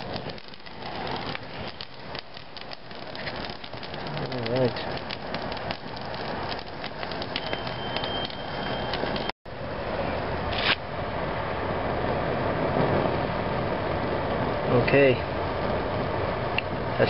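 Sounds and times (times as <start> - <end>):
gas torch flame: 0.0 - 9.3
burning material crackling: 0.0 - 9.4, 11.8 - 17.0.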